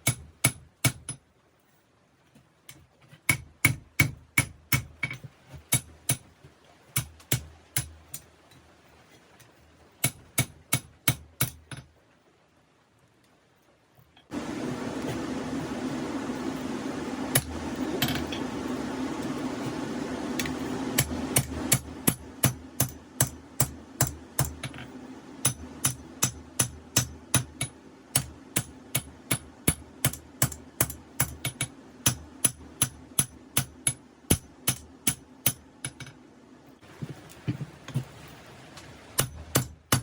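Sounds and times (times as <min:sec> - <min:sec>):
steady rushing noise: 0:14.3 - 0:28.5
hammer striking steel on anvil: 0:20.4 - 0:24.8, 0:25.4 - 0:36.1.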